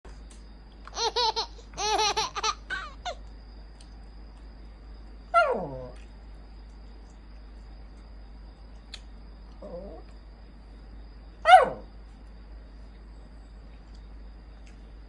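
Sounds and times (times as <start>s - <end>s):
dog whining: 9.6s - 10.0s.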